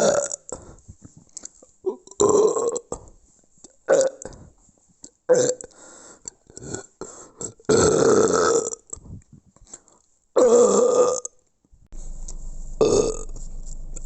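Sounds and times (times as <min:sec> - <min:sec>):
person burping loudly: 0:00.0 - 0:00.6, 0:01.8 - 0:03.0, 0:07.5 - 0:09.0, 0:10.4 - 0:11.4, 0:12.8 - 0:13.2.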